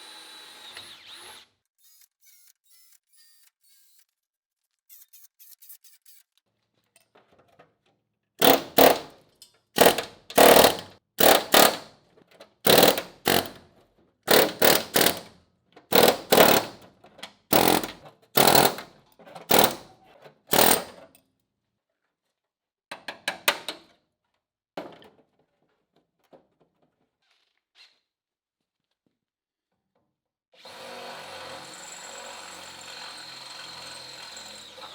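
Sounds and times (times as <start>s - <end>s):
power tool on sheet metal: 0.0s - 4.1s, 8.4s - 9.1s, 9.8s - 11.9s, 12.7s - 13.6s, 14.3s - 15.3s, 15.9s - 16.8s, 17.5s - 18.9s, 19.5s - 19.8s, 20.5s - 20.9s, 30.6s - 34.9s.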